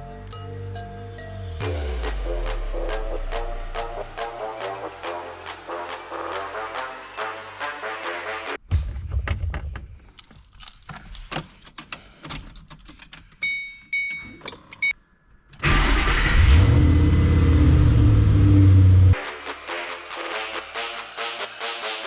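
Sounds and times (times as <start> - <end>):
car engine starting and running: 15.6 - 19.2.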